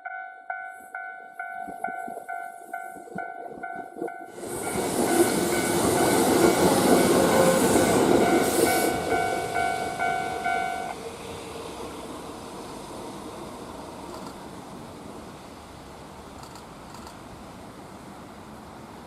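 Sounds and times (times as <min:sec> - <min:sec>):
crossing bell ringing: 0:00.0 - 0:11.0
train passing: 0:00.0 - 0:19.0.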